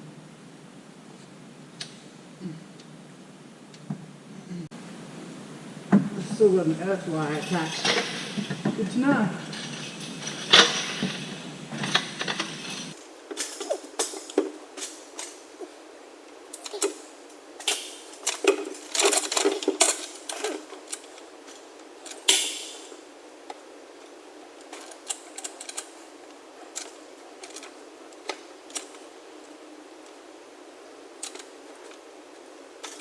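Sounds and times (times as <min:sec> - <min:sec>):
metal clank with scrape: 0:07.3 - 0:08.8, 0:09.4 - 0:14.5.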